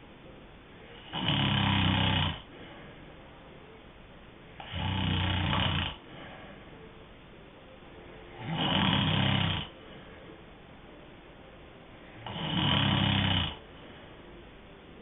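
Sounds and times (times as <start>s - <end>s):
soft breathing hiss: 0.0s - 15.0s
person snoring with rattle: 1.0s - 2.5s, 4.6s - 6.3s, 8.3s - 9.8s, 12.2s - 13.6s.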